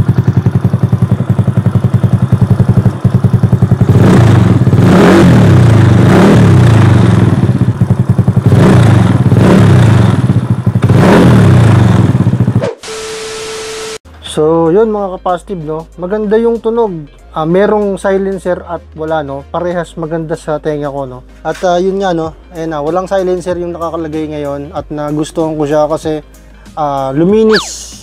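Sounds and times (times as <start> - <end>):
scooter engine idling and revving: 0.0 - 13.4.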